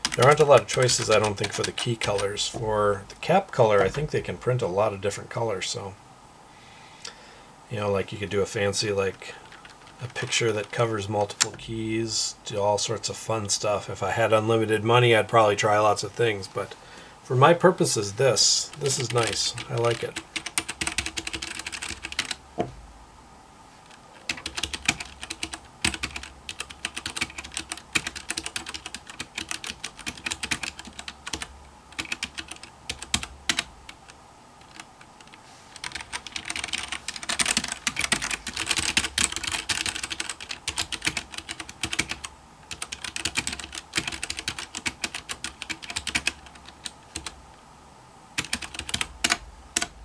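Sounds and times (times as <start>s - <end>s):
mechanical keyboard typing: 0.0s - 2.4s, 9.5s - 10.7s, 18.8s - 22.4s, 24.2s - 33.7s, 34.6s - 47.4s, 48.4s - 49.9s.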